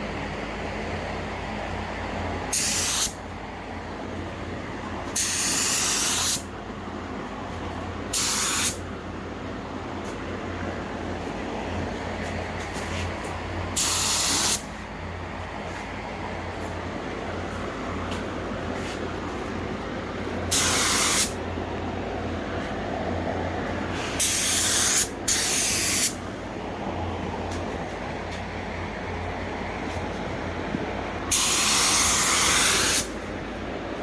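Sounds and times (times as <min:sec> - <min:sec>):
air gun hissing bursts: 0:02.5 - 0:03.2, 0:05.2 - 0:06.5, 0:08.1 - 0:08.8, 0:13.8 - 0:14.7, 0:20.5 - 0:21.4, 0:23.9 - 0:26.2, 0:31.3 - 0:33.2.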